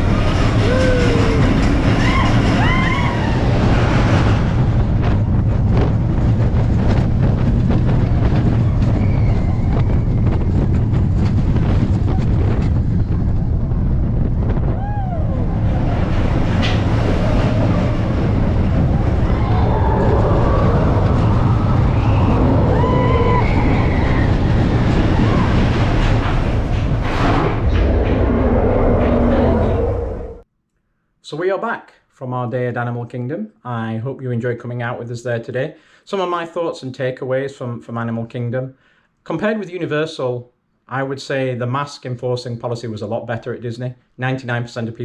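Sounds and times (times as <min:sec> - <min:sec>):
wind buffeting microphone: 0:00.0 - 0:30.4
low vehicle rumble: 0:00.0 - 0:30.5.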